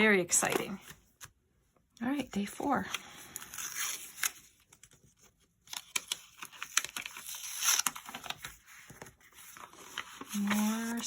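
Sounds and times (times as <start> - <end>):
paper wrapping tearing and rustling: 3.3 - 11.0.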